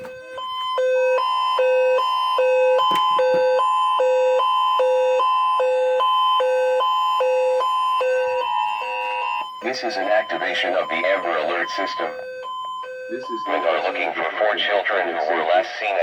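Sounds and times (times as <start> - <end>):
alternating low and high beep: 8.8 - 14.3.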